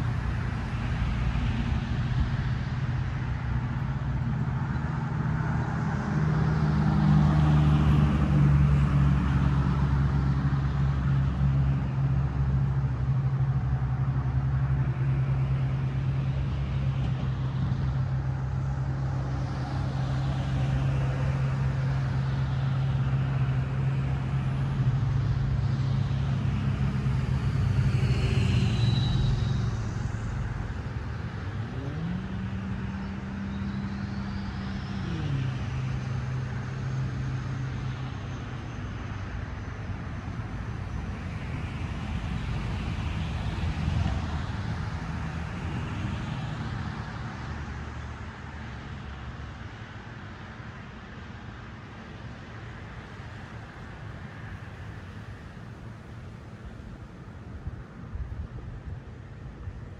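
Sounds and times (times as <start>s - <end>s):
low traffic hum: 0.0s - 59.9s
vehicles passing: 0.0s - 59.9s
engine note rising and falling: 26.8s - 36.2s.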